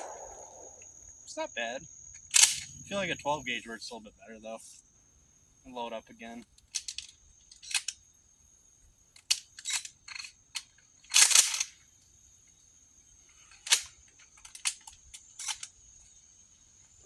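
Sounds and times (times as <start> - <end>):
shotgun shells loading clicks: 2.2 - 2.8, 6.6 - 8.0, 9.2 - 11.8, 13.6 - 15.8.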